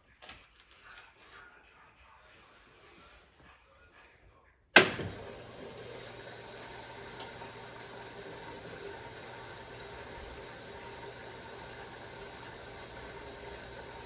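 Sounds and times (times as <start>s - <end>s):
machine humming with hiss: 4.8s - 14.0s.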